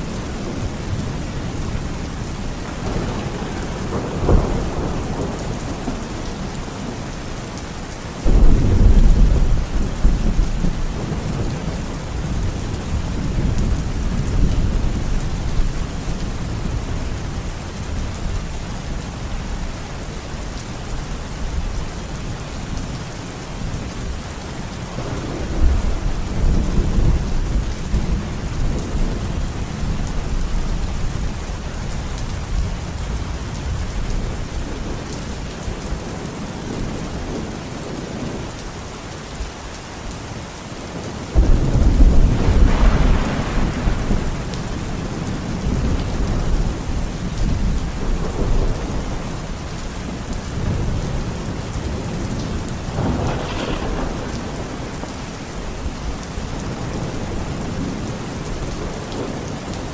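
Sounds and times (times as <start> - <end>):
steady rain: 0.0 - 59.9
low rumbling thunder: 0.1 - 7.1, 8.2 - 18.4, 24.9 - 31.4, 41.3 - 59.8
loud thunderclap: 8.2 - 11.8, 41.4 - 44.5, 52.9 - 55.1.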